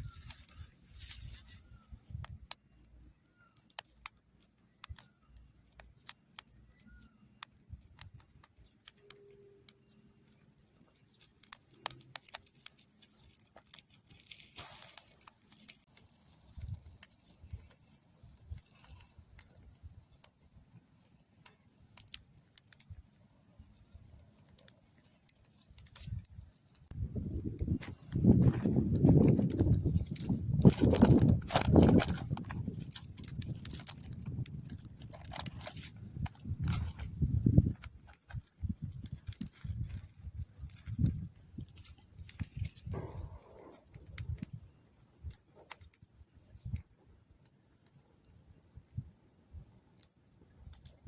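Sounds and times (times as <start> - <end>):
sharp clicks and crackles: 0.0 - 51.0
faint chirps: 4.6 - 7.5.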